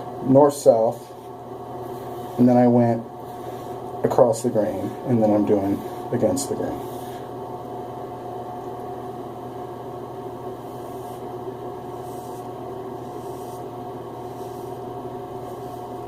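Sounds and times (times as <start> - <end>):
steady hum: 0.0 - 16.0
razor scraping lathered scalp: 10.5 - 16.0.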